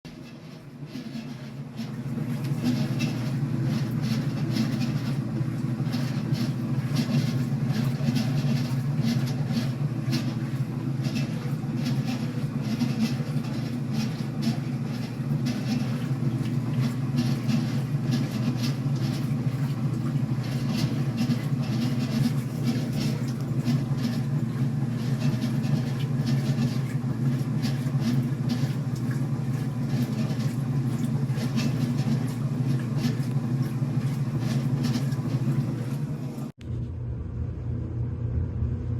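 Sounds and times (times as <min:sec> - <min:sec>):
washing machine drone: 0:00.0 - 0:38.9
rough pulley clatter: 0:05.8 - 0:35.6.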